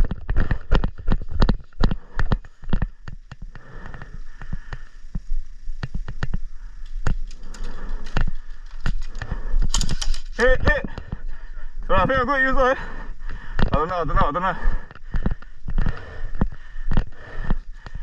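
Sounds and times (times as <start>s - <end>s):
sharp clicks and knocks: 0.0s - 11.3s.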